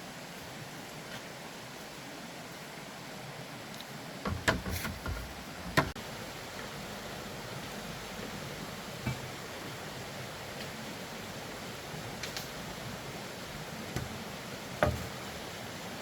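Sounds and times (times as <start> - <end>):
steady hiss: 0.0 - 16.0
sharp knocks and clatter: 4.3 - 6.0.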